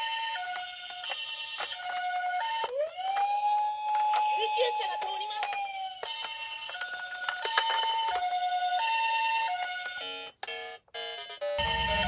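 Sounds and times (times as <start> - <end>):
two-tone electronic siren: 0.0 - 12.0
low rumble: 11.6 - 12.0
second siren: 11.6 - 12.0.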